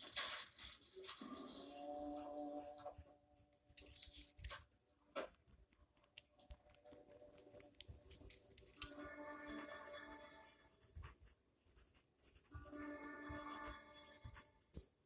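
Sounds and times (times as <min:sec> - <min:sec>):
faint television audio: 0:00.0 - 0:15.0
pencil scratching on paper: 0:01.2 - 0:04.0, 0:07.8 - 0:15.0.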